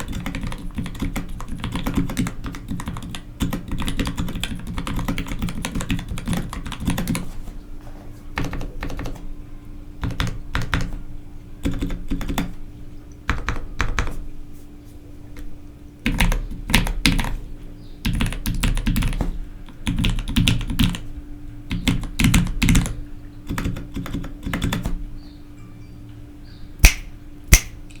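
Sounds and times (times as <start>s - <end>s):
loud keyboard clacks: 0.0s - 7.3s, 8.4s - 9.2s, 11.6s - 12.6s, 16.1s - 17.3s, 18.1s - 21.0s, 21.7s - 25.0s
mechanical keyboard typing: 0.0s - 7.3s, 8.4s - 9.2s, 10.0s - 11.0s, 11.6s - 12.6s, 16.0s - 17.4s, 18.0s - 21.0s, 21.7s - 25.0s.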